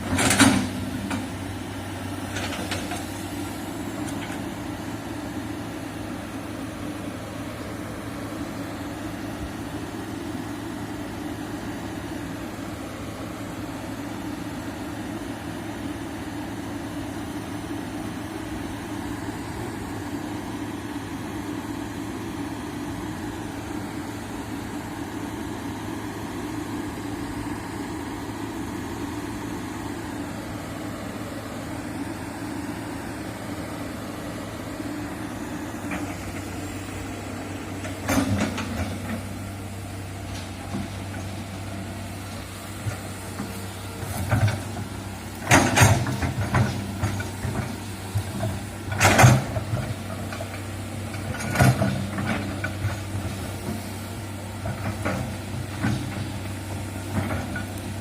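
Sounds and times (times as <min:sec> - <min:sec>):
excavator engine running: 0:00.0 - 0:58.0
excavator bucket knocks and clanks: 0:45.3 - 0:47.7, 0:48.3 - 0:50.0.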